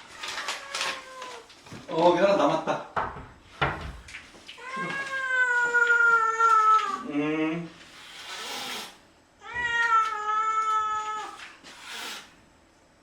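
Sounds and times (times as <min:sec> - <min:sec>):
cat meowing: 0:00.1 - 0:01.5, 0:04.6 - 0:07.1, 0:09.4 - 0:11.4.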